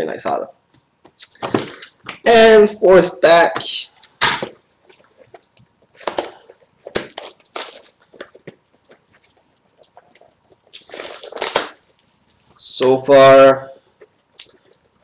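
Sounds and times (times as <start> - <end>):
card pack wrapper crinkling: 3.6 - 12.4.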